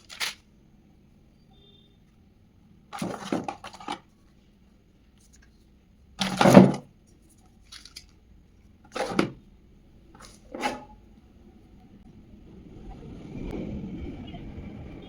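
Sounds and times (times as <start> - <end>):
packaging rustling: 0.0 - 0.4, 7.6 - 8.1.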